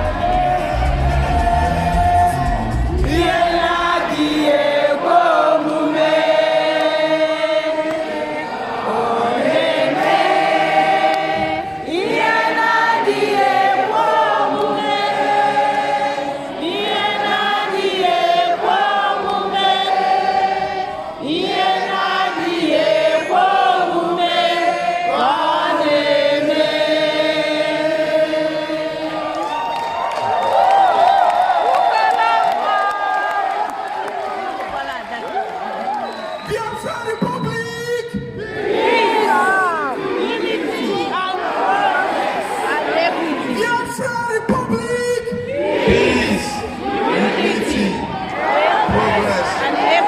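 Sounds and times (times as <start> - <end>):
choir singing: 0.0 - 29.8, 38.3 - 43.7, 45.4 - 50.0.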